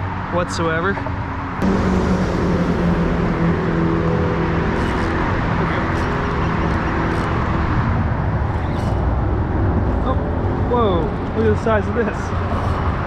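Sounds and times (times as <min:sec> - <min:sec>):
vehicle engine drone: 0:00.0 - 0:13.0
steady rushing noise: 0:01.3 - 0:13.0.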